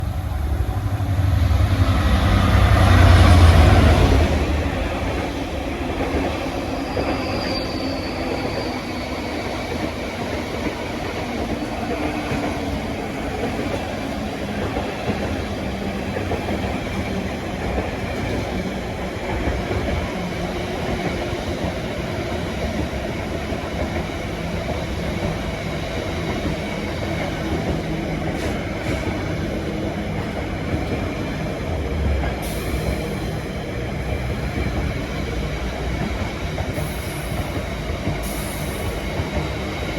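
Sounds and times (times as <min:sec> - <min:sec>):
train wheels rumbling on track: 0:00.0 - 0:39.9
high wheel squeal: 0:06.6 - 0:09.6.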